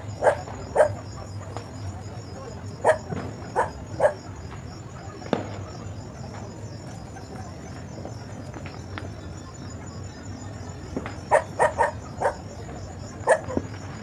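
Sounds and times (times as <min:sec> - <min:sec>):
dog barking: 0:00.0 - 0:01.3, 0:02.8 - 0:04.4, 0:11.2 - 0:13.6
crickets chirring: 0:00.0 - 0:14.0.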